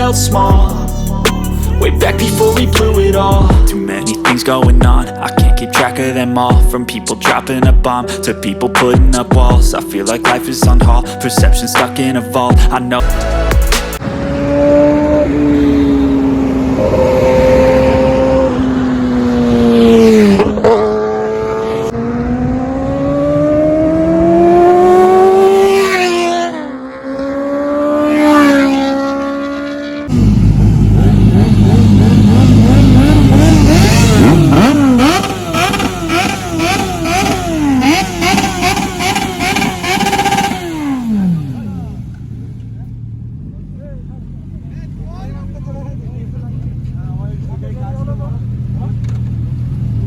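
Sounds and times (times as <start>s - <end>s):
motorcycle engine revving: 13.0s - 50.0s.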